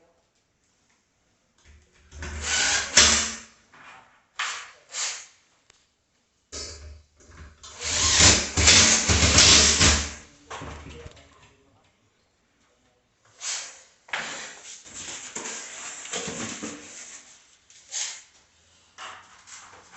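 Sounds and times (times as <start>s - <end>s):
power drill running: 2.3s - 3.3s, 7.7s - 10.2s.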